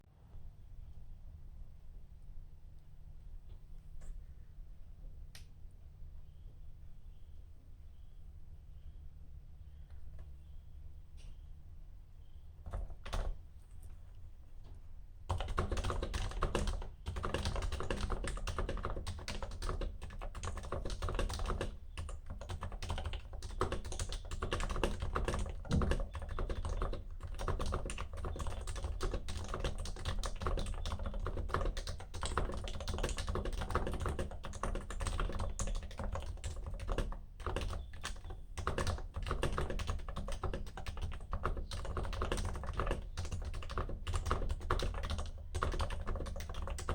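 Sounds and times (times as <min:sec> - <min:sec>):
fast keyboard typing: 0:12.7 - 0:13.4, 0:15.3 - 0:46.9.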